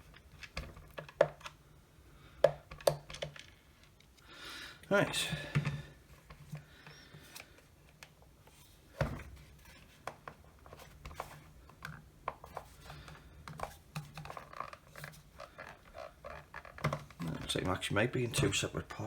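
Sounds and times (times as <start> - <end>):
plastic parts clicking and knocking: 0.0 - 1.6, 2.4 - 4.2, 5.4 - 19.0.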